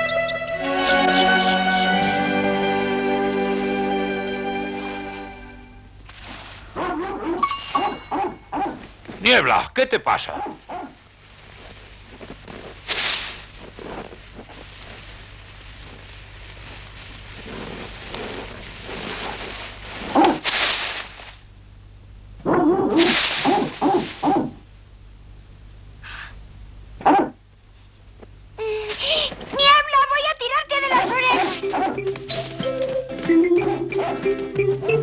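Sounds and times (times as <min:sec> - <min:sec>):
cartoon dog barking and whimpering: 0:27.0 - 0:27.4, 0:30.9 - 0:32.1, 0:33.4 - 0:35.0.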